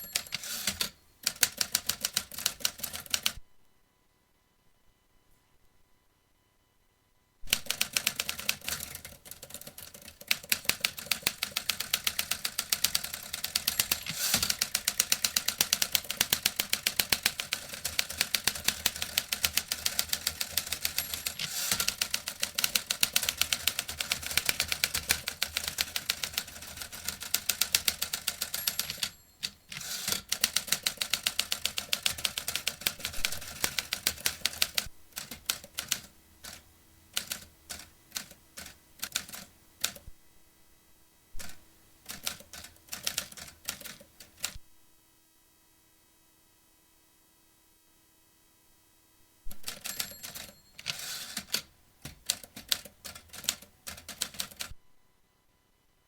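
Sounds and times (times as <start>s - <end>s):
typewriter keystrokes clacking: 0.0s - 3.4s, 7.5s - 36.6s, 49.6s - 54.7s.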